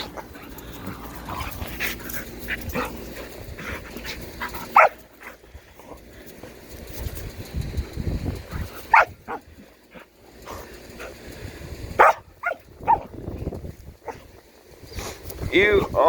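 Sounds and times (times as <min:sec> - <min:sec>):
dog yipping: 0:04.8 - 0:05.0, 0:08.5 - 0:09.4, 0:12.0 - 0:13.1.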